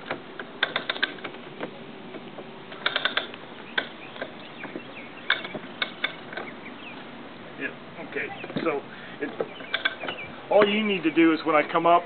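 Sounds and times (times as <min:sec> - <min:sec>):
winch ratchet clicking: 0:00.0 - 0:01.4, 0:02.7 - 0:06.6, 0:09.3 - 0:10.3.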